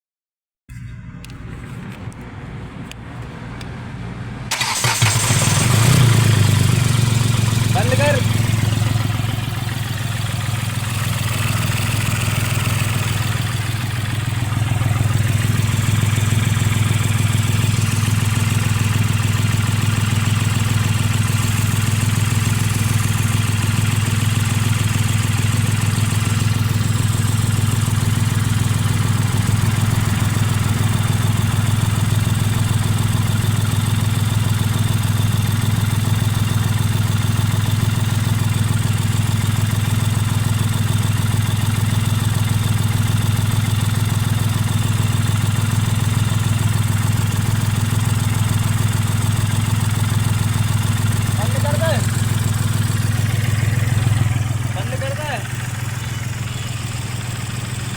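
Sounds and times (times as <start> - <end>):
diesel engine idling: 0.8 - 57.9.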